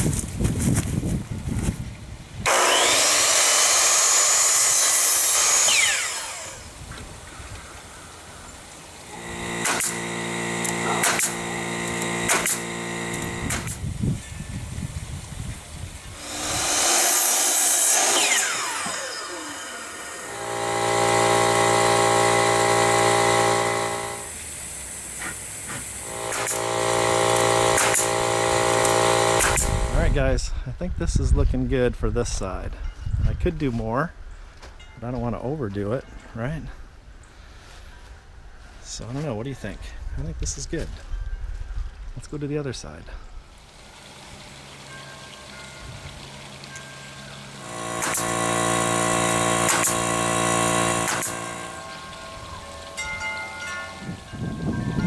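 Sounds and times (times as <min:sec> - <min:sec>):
power saw cutting wood: 0:02.5 - 0:07.3, 0:08.8 - 0:13.9, 0:16.1 - 0:30.2, 0:47.2 - 0:55.0
sharp clicks: 0:09.2 - 0:13.8, 0:26.2 - 0:26.7, 0:27.3 - 0:28.2, 0:28.8 - 0:30.0, 0:48.0 - 0:48.4, 0:49.6 - 0:50.1, 0:51.0 - 0:53.0.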